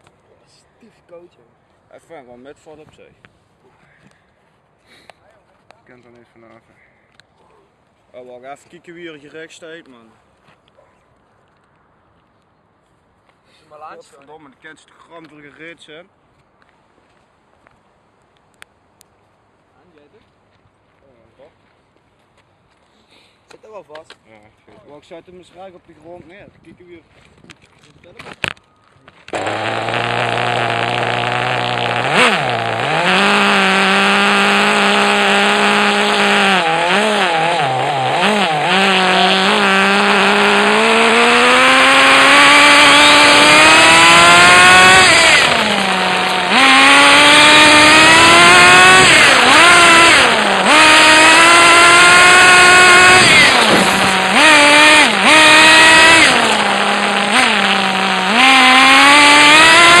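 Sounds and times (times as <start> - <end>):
rc car motor revving: 29.3 - 60.0.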